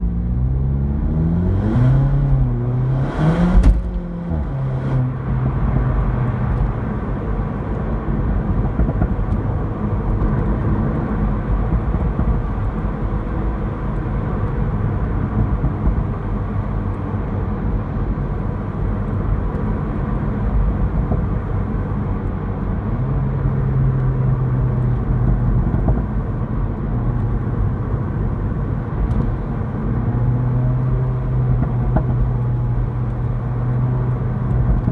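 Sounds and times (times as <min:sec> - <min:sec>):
car engine revving: 0:00.0 - 0:17.1
exhaust pops and bangs: 0:02.9 - 0:17.0, 0:24.9 - 0:26.4, 0:27.1 - 0:34.9.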